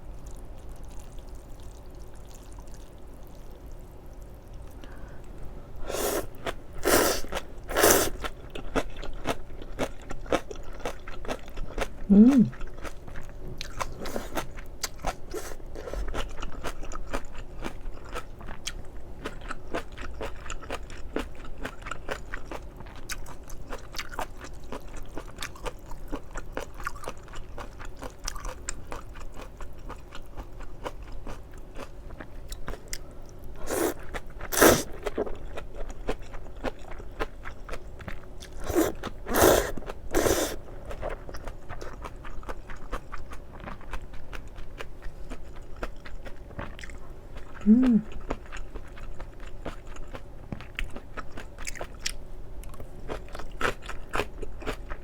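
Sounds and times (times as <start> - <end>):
wet chewing: 30.8 - 55.0.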